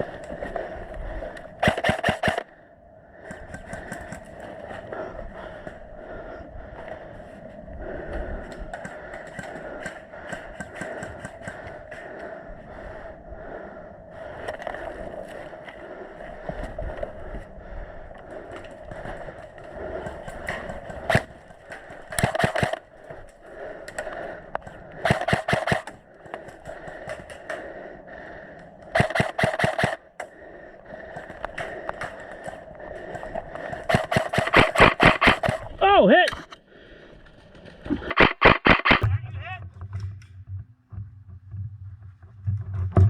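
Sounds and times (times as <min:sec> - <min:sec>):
airsoft gun firing bursts: 0:01.6 - 0:02.5, 0:22.1 - 0:22.8, 0:25.0 - 0:26.0, 0:29.0 - 0:30.0, 0:33.9 - 0:35.7, 0:38.0 - 0:39.0.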